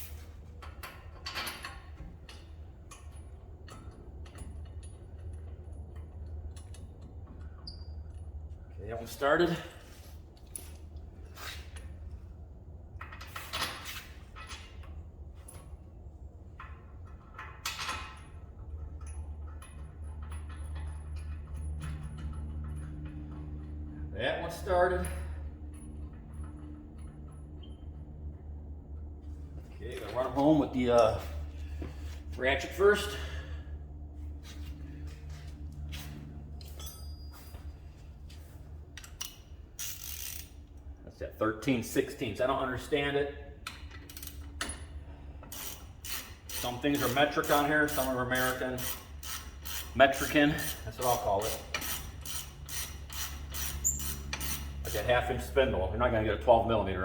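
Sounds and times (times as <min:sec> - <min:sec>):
steady low hum: 0:00.0 - 0:57.0
metallic clicks and scrapes: 0:39.0 - 0:40.9.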